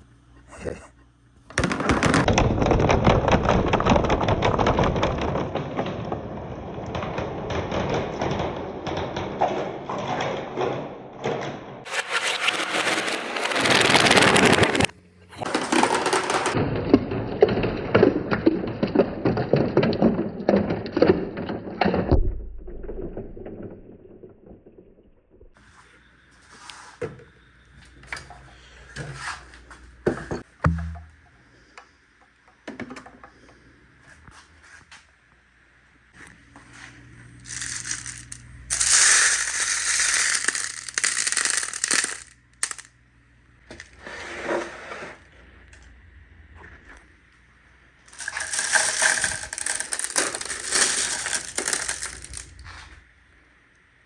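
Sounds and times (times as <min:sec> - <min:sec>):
marbles clattering on wooden run: 0:01.5 - 0:10.4, 0:11.8 - 0:16.6, 0:37.4 - 0:42.9, 0:48.1 - 0:52.7.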